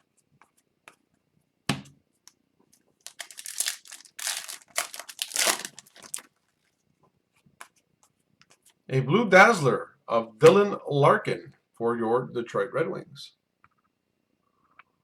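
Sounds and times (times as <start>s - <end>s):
foil wrapper tearing and crinkling: 3.0s - 6.3s.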